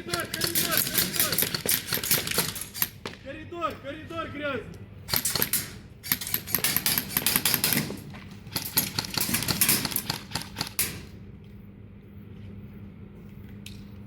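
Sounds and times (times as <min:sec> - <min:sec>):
airsoft guns firing: 0:00.0 - 0:03.1, 0:05.1 - 0:11.1.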